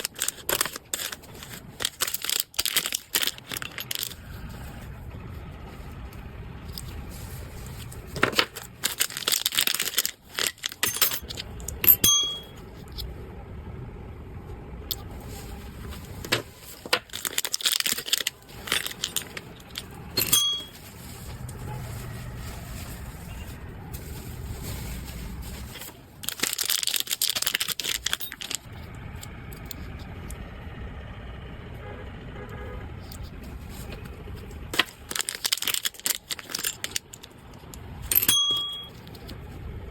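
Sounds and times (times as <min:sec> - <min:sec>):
packaging rustling and crinkling: 0:00.0 - 0:04.9, 0:06.6 - 0:11.8, 0:15.0 - 0:28.8, 0:33.2 - 0:37.7
low background hum: 0:00.0 - 0:39.9.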